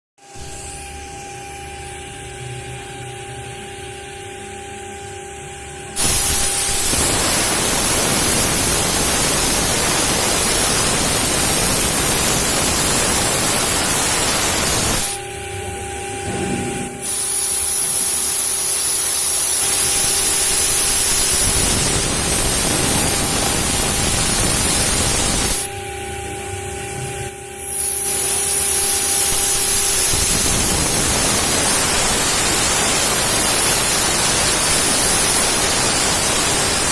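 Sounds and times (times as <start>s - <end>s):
spindle high whine: 0.2s - 36.9s
router hissing cutting noise: 6.0s - 15.2s, 17.0s - 25.7s, 27.6s - 36.9s.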